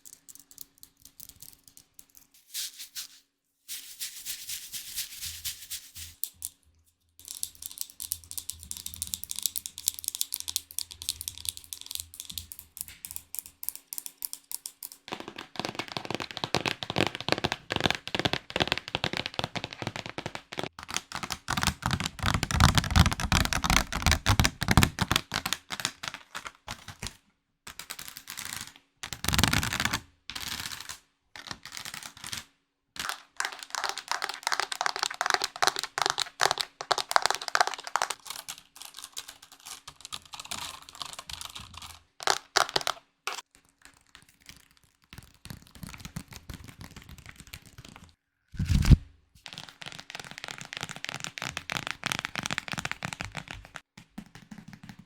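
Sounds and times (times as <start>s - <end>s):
rapid tapping and clicking: 7.6s - 26.3s, 49.5s - 55.0s.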